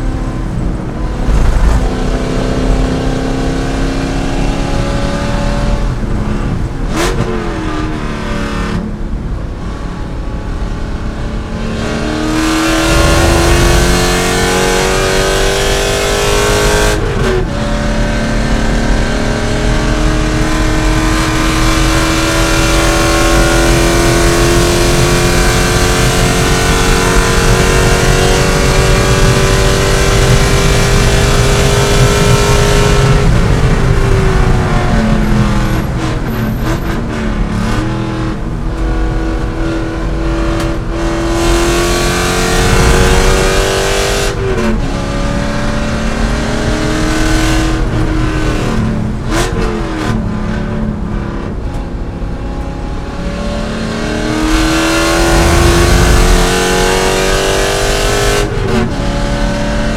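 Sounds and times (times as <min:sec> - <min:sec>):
racing car engine revving: 0:00.0 - 0:59.9.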